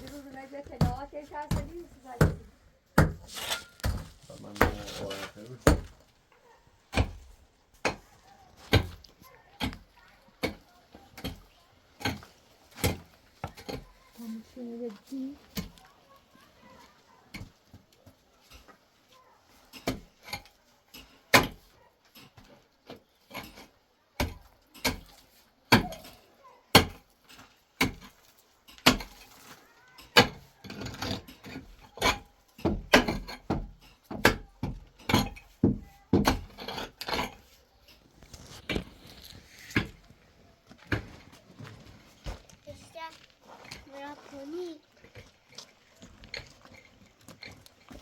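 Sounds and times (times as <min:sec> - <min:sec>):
hard objects knocking and clattering: 0:00.0 - 0:06.2, 0:06.8 - 0:14.2, 0:29.9 - 0:44.1.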